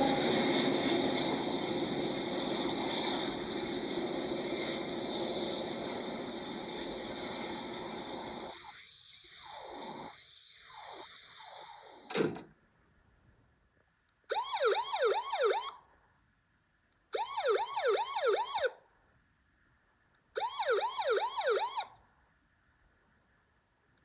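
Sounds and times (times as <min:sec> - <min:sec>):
sharp click: 0:12.1 - 0:12.5
siren yelping: 0:14.3 - 0:15.8, 0:17.2 - 0:18.8, 0:20.4 - 0:22.0.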